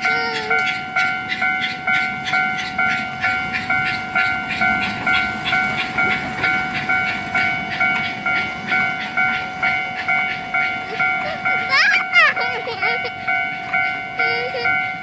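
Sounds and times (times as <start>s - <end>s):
level-crossing alarm ringing: 0.0s - 15.0s.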